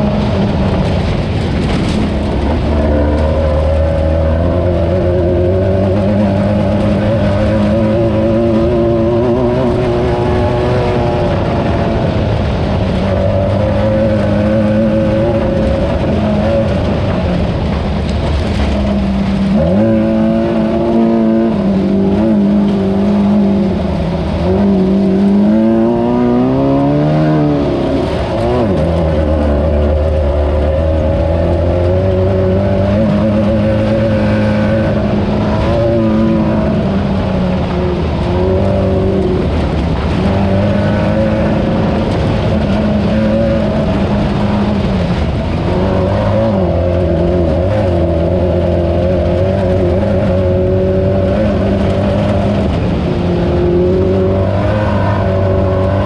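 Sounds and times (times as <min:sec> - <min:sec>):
race car engine revving: 0:00.0 - 0:56.0.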